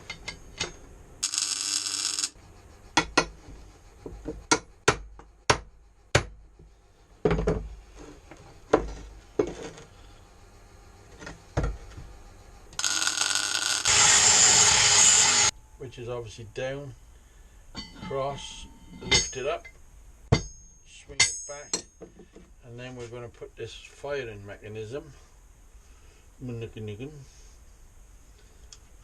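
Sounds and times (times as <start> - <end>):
welding hiss: 1.2 - 2.4, 12.8 - 15.5
metallic clinks and knocks: 17.7 - 22.4.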